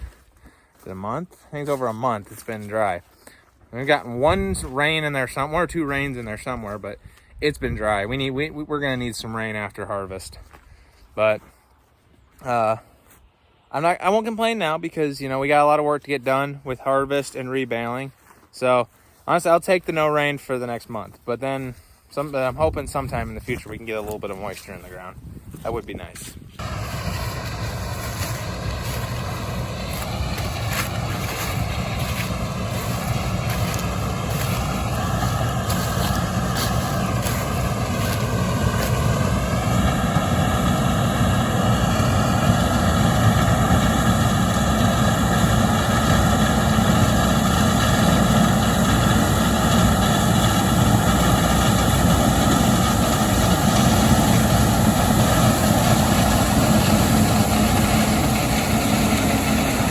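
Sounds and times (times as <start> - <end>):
heavy farm machine engine running: 26.6 - 59.9.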